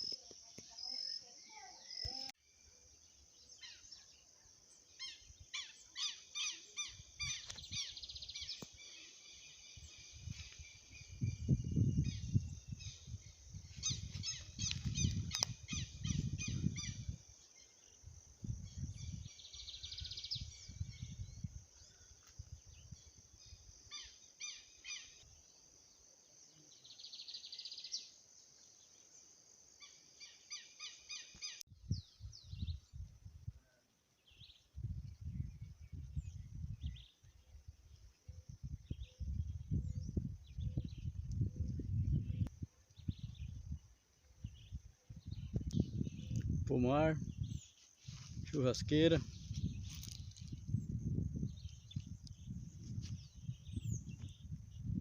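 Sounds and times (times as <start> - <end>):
birds chirping: 0.0 - 33.1.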